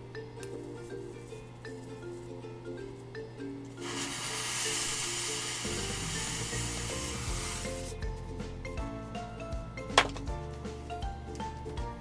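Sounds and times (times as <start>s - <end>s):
background music: 0.0s - 12.0s
fuse burning with hiss: 0.5s - 8.0s.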